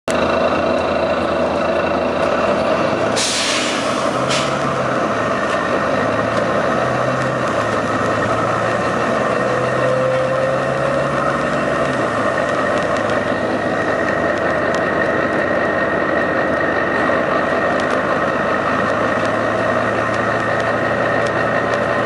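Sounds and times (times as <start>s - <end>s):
bus diesel engine running: 0.1s - 22.0s
engine hissing bursts: 3.0s - 4.6s.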